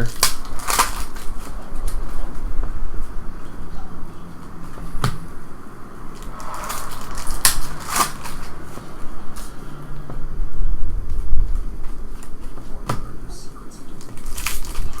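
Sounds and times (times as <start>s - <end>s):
card packs rustling and crinkling: 0.0s - 2.0s, 13.9s - 15.0s.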